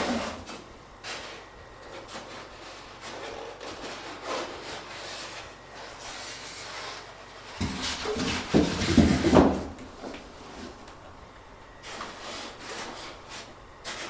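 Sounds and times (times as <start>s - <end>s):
bumps and knocks: 7.6s - 10.2s.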